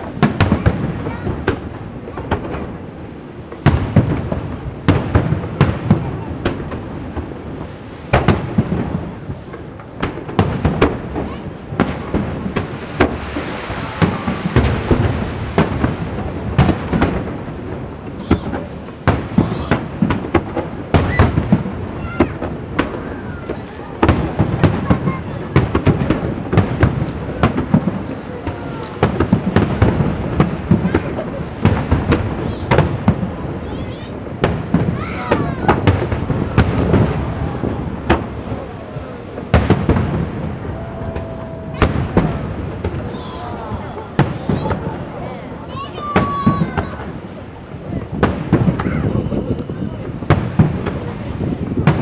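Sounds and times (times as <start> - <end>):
fireworks booms and cracks: 0.0 - 52.0
firework whistles: 18.2 - 44.8, 48.2 - 52.0.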